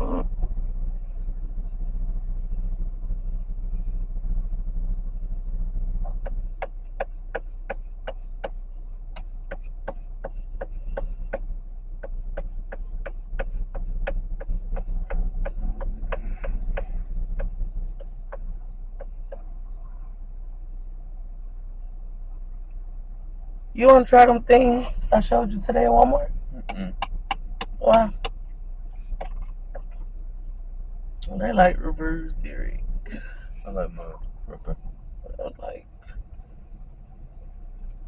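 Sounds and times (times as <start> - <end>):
car engine and road hum: 0.0 - 38.0
turn signal ticking: 5.7 - 19.9, 23.8 - 30.2.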